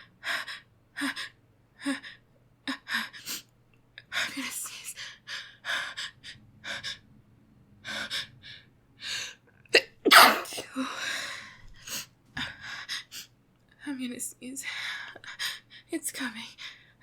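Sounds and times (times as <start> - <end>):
woman sneezing: 9.8 - 10.7.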